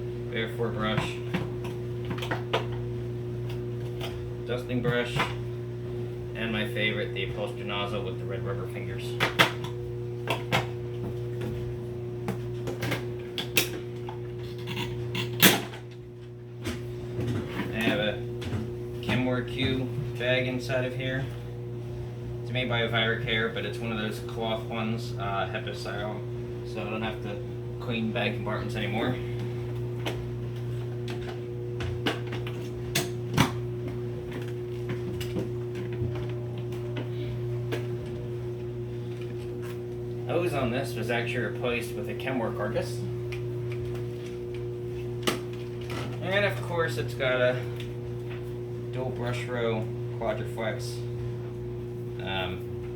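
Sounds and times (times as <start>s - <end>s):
steady low hum: 0.0s - 52.9s.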